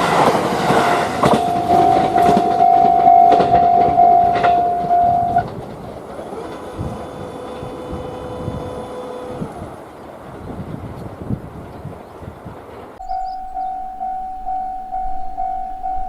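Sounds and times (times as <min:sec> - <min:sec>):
train wheels clacking on rails: 0:00.0 - 0:10.2
level crossing warning alarm: 0:00.8 - 0:05.5, 0:13.0 - 0:16.0.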